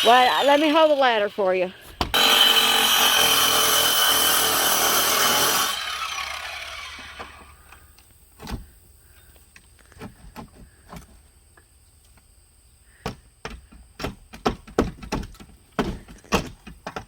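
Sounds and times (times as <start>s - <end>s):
knocks on wooden siding: 13.0s - 17.0s.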